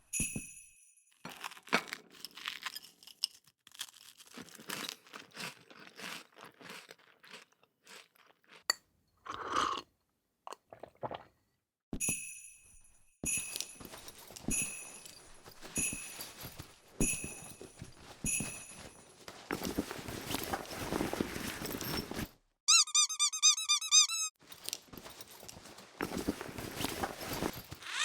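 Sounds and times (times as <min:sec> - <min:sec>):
sleigh bells jingling: 0:12.1 - 0:19.1, 0:21.4 - 0:24.3.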